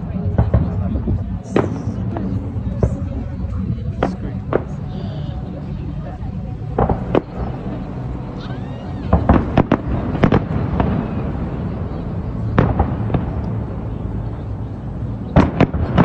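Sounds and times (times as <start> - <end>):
low rumble: 0.0 - 16.0
fireworks bangs: 0.2 - 3.3, 9.0 - 16.0.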